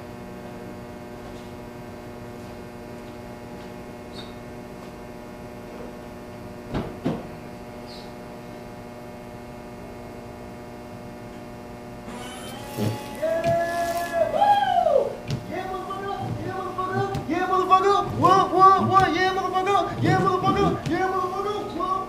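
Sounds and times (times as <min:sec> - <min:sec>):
steady electrical hum: 0:00.0 - 0:22.0.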